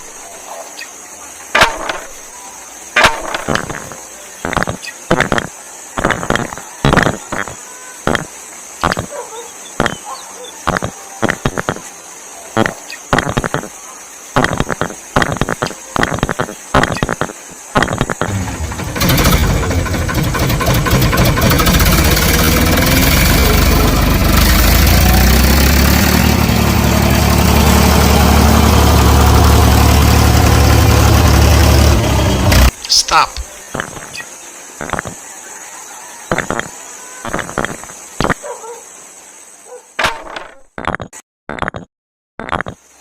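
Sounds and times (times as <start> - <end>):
sharp clicks and knocks: 1.6 - 2.2
engine running: 18.2 - 32.8.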